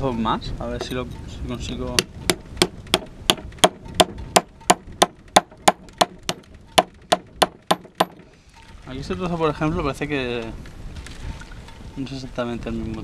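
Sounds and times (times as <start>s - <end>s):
hammer striking chisel on rock: 2.0s - 8.3s.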